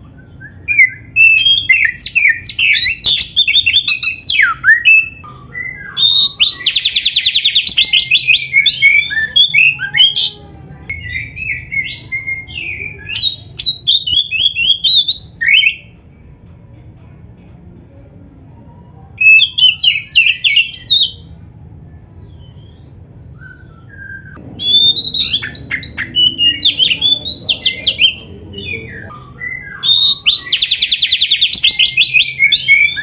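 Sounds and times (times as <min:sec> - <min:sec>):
songbird singing varied whistles: 0:00.2 - 0:10.3, 0:18.8 - 0:33.0
fast even bird trill: 0:24.1 - 0:33.0.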